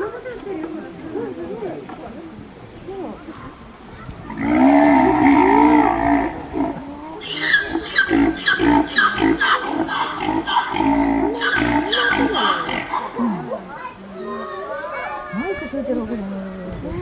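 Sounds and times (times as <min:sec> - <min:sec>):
large animal calling: 0:04.3 - 0:13.6.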